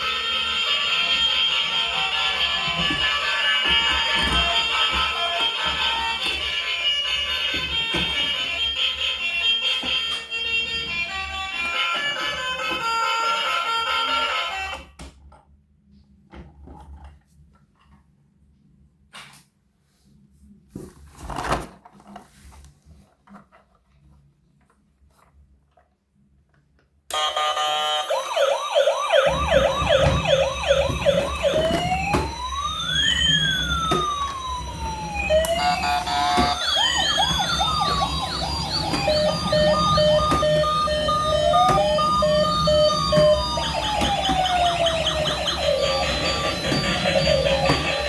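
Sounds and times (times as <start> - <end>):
emergency vehicle sirens: 0.0 - 14.8, 27.1 - 48.0.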